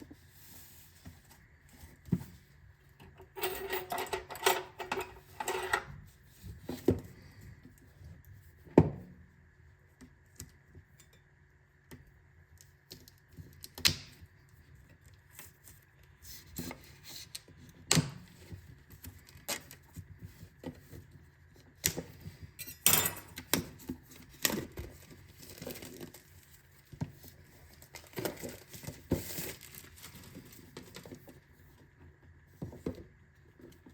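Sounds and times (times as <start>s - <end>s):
packaging rustling: 24.6s - 31.3s.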